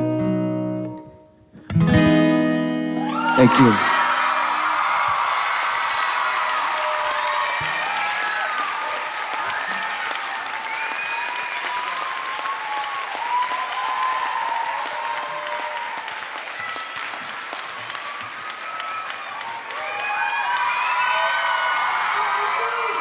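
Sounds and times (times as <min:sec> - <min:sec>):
high voices shouting and whooping: 0:03.0 - 0:09.9, 0:18.6 - 0:23.0
audience applauding: 0:03.0 - 0:23.0.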